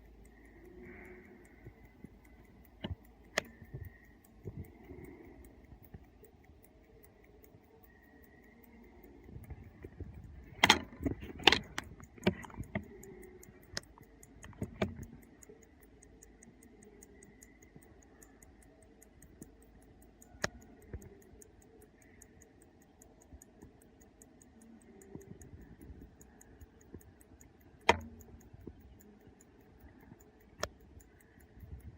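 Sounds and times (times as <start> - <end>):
alarm clock ticking: 0.0 - 31.9
clicks and knocks from handling: 10.5 - 12.9.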